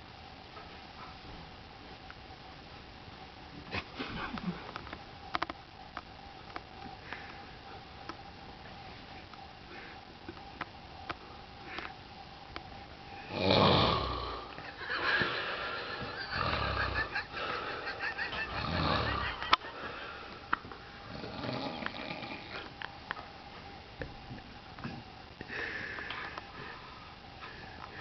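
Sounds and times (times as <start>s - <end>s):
heavy rattling snoring: 13.2s - 14.5s, 16.0s - 17.1s, 18.4s - 19.4s, 21.0s - 22.7s.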